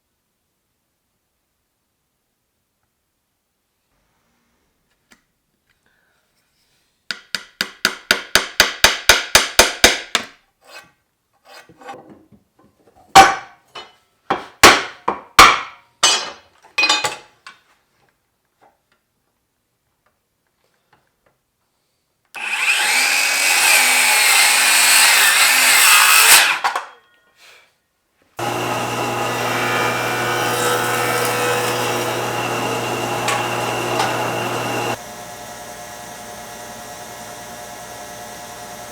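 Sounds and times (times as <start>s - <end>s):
motor running: 28.4s - 38.9s.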